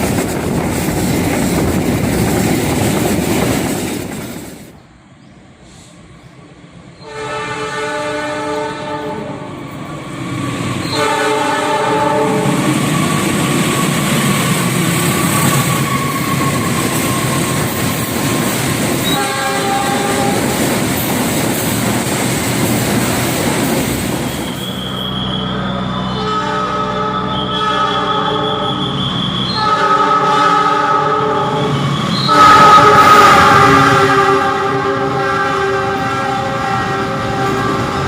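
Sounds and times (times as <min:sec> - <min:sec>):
train rumble and wheel clatter: 0:00.0 - 0:38.0
train horn chord: 0:07.0 - 0:09.5, 0:10.9 - 0:12.6, 0:19.0 - 0:20.5, 0:25.9 - 0:38.0.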